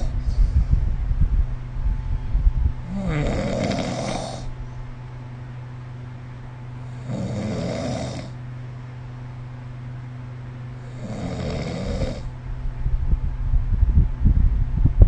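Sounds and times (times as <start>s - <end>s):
low rattling snore: 0.0s - 0.6s, 2.8s - 4.6s, 6.9s - 8.4s, 10.8s - 12.3s
airy breaths: 2.8s - 4.8s.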